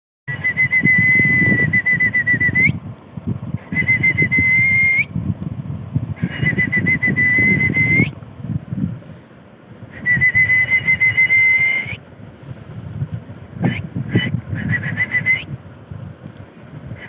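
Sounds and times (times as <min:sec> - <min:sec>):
high whistle-like tone: 0:00.3 - 0:02.8, 0:03.7 - 0:05.1, 0:06.2 - 0:08.2, 0:10.0 - 0:12.0, 0:13.6 - 0:15.5.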